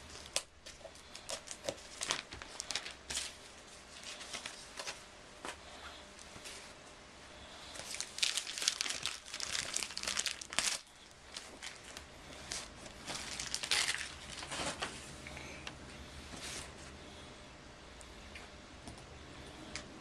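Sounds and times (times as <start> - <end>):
packing material crinkling: 0.1 - 5.0, 7.7 - 14.9.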